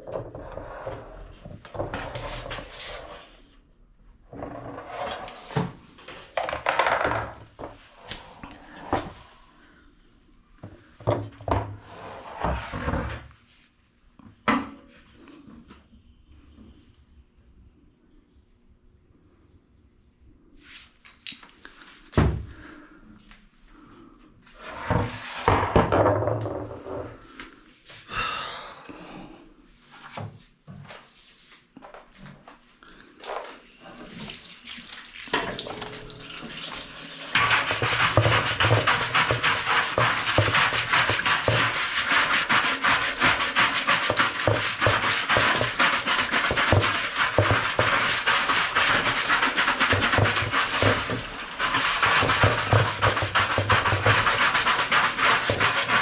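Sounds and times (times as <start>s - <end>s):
brush scrubbing: 35.9s - 56.0s.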